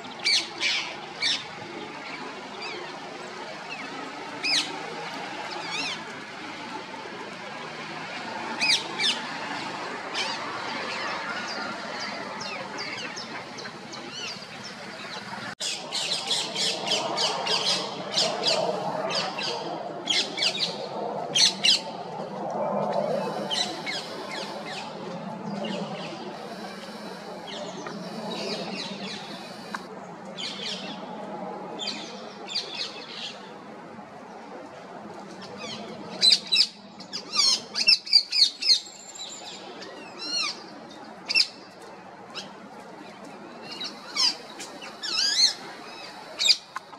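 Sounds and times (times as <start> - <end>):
parakeets squawking: 23.2 - 24.9.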